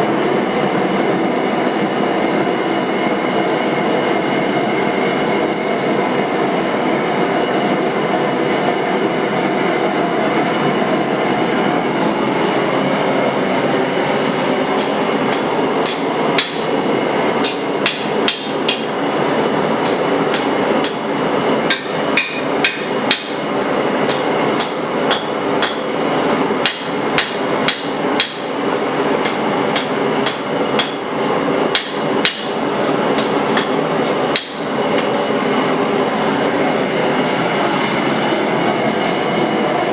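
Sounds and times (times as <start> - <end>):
hammer striking steel on anvil: 14.7 - 16.8, 17.4 - 19.0, 19.8 - 21.1, 21.7 - 26.0, 26.6 - 35.2.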